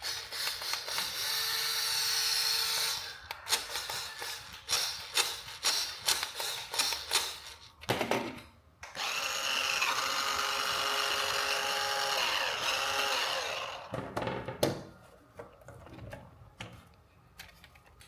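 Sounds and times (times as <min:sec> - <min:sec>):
toy car electric motor whirring: 0:00.0 - 0:07.7, 0:08.8 - 0:13.9.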